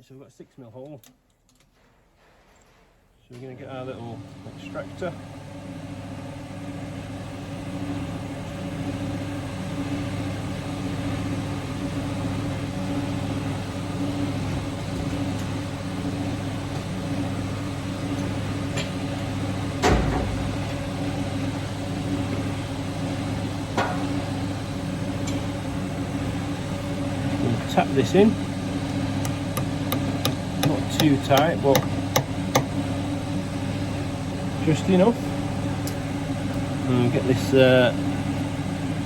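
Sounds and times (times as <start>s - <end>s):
workshop machinery humming: 3.3s - 39.0s
tools knocking: 28.9s - 32.8s.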